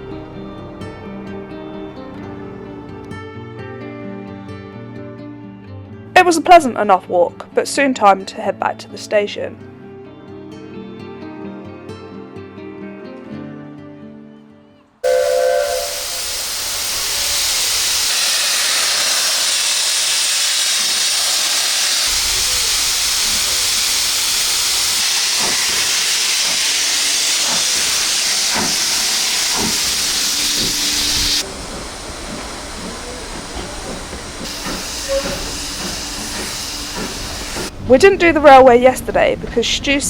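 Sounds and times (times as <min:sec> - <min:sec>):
steam locomotive hissing: 0:15.0 - 0:38.3.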